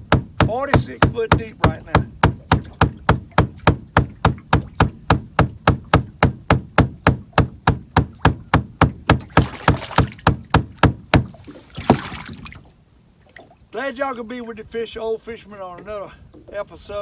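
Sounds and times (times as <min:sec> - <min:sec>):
rapid knocking: 0:00.0 - 0:12.3.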